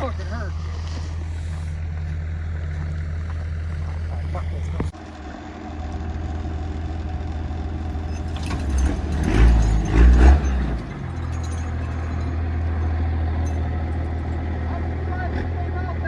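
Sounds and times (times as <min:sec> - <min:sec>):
truck engine running: 0:00.0 - 0:16.0.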